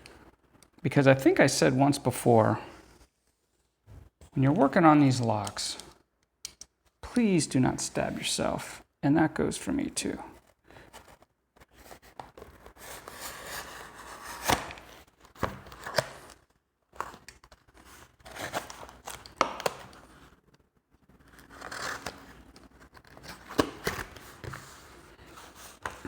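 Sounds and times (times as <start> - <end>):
sharp snaps and clicks: 6.2 - 6.8
packaging cut and torn with blade: 21.2 - 24.6.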